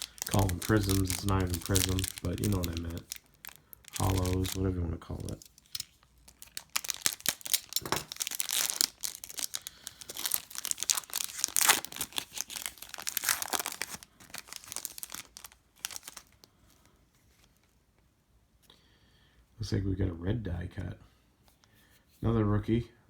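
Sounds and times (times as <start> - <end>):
plastic foil wrapper tearing and crinkling: 0.0 - 16.9.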